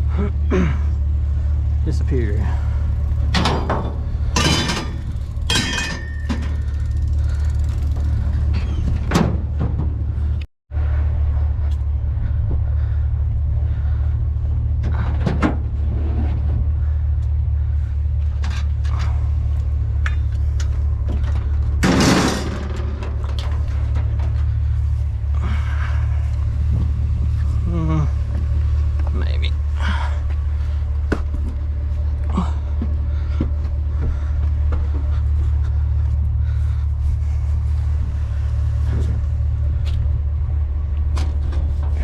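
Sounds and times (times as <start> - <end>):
vehicle engine idling: 0.0 - 42.0
knocks and clunks of objects: 3.2 - 6.8, 8.0 - 10.5, 14.8 - 16.8, 20.0 - 24.8.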